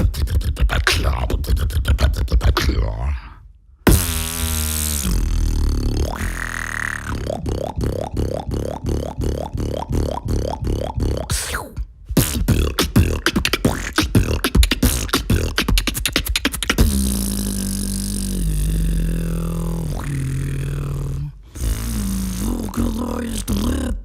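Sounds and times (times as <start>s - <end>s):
beatbox sharp clicks: 0.0s - 2.8s, 3.9s - 7.8s, 8.6s - 18.2s
beatbox rising swoops: 0.0s - 3.0s, 3.9s - 23.9s
low steady bass tone: 3.8s - 15.6s, 16.8s - 24.0s.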